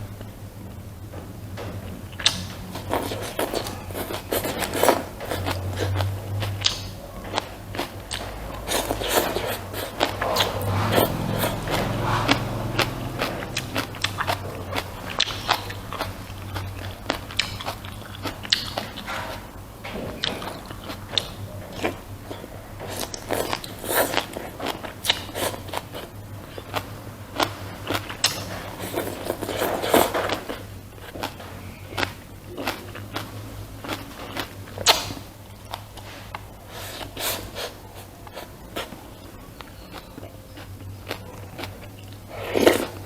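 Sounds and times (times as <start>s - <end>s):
low hum: 0.0s - 24.9s
person chewing crunchy food: 1.9s - 43.0s.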